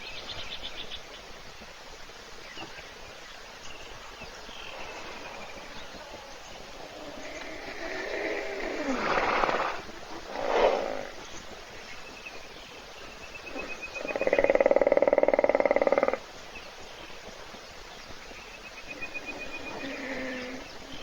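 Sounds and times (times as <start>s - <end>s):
hippopotamus snoring: 6.8s - 11.3s, 19.0s - 21.0s.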